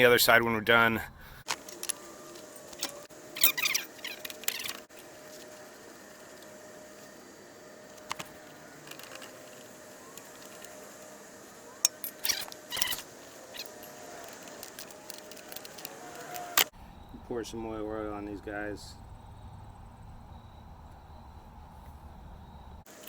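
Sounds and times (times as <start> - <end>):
metal parts and tools clinking: 1.5 - 7.1, 7.9 - 16.7.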